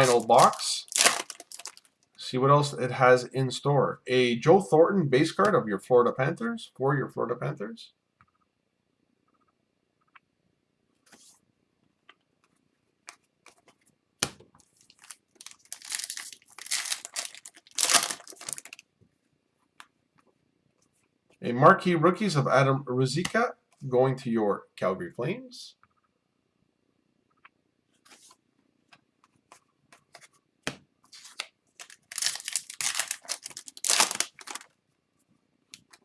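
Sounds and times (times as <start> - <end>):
foil wrapper tearing and crinkling: 0.0 - 1.9, 14.9 - 18.8, 31.2 - 34.7.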